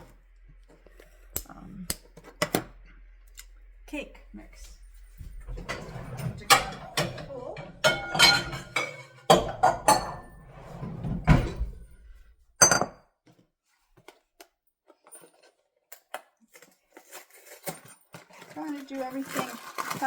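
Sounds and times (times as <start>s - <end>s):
dishes and utensils clattering: 5.2s - 13.0s.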